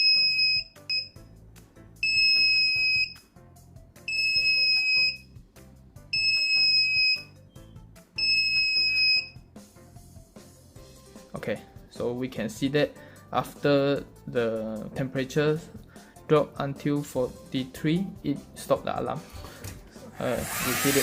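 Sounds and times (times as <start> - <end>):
alarm buzzer beeping: 0.0 - 1.2, 2.0 - 3.2, 4.1 - 5.2, 6.1 - 7.3, 8.2 - 9.4.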